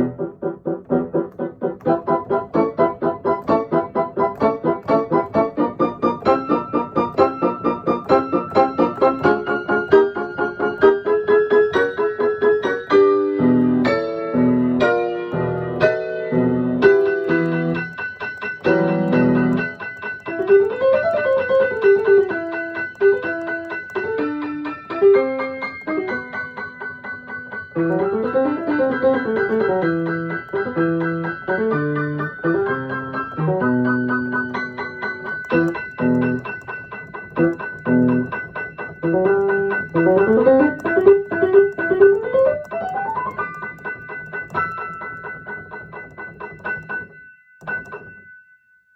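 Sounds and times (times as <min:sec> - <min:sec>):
solo piano piece: 0:00.0 - 0:48.4.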